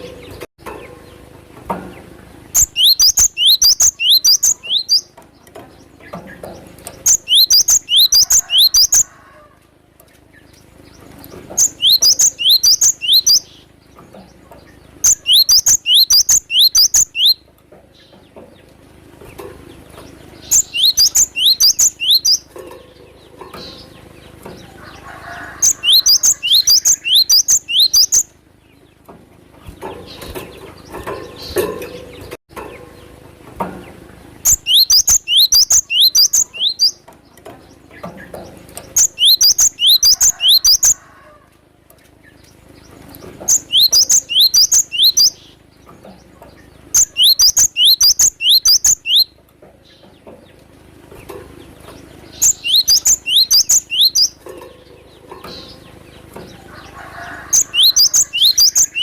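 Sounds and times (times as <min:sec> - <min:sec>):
bird singing rapid high notes: 0:02.5 - 0:05.1, 0:07.0 - 0:09.0, 0:11.5 - 0:13.6, 0:15.0 - 0:17.4, 0:20.4 - 0:22.5, 0:25.6 - 0:28.3, 0:34.4 - 0:37.0, 0:38.9 - 0:41.0, 0:43.5 - 0:45.6, 0:47.0 - 0:49.3, 0:52.3 - 0:54.4, 0:57.5 - 0:59.0.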